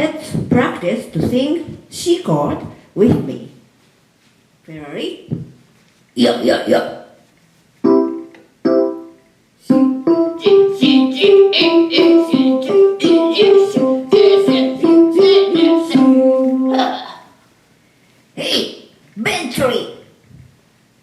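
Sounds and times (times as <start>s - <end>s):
piano-like keyboard chords: 7.8s - 17.2s
person singing: 9.6s - 17.3s.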